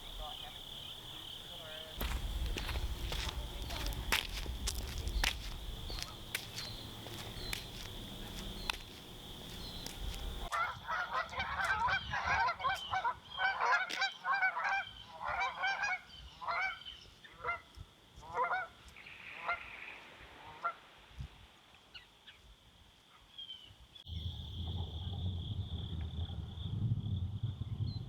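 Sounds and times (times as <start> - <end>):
high insect drone: 0.0 - 11.2, 24.1 - 26.7
geese honking: 0.0 - 16.8.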